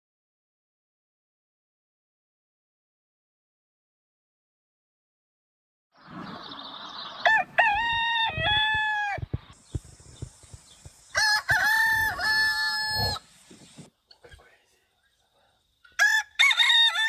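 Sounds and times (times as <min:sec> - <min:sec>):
rooster crowing: 0:06.3 - 0:13.9, 0:16.0 - 0:17.0.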